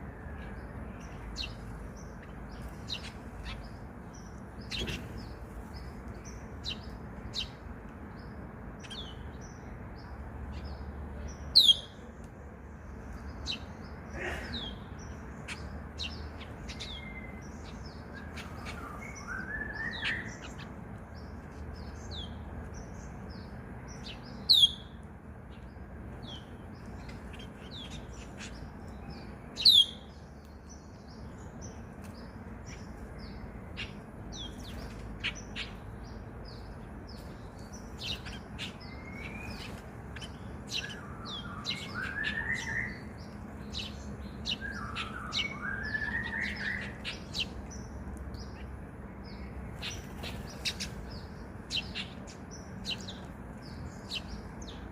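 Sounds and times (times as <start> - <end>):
small birds chirping: 0.0 - 54.9
sharp sweeping bird calls: 13.2 - 25.6, 31.0 - 54.9.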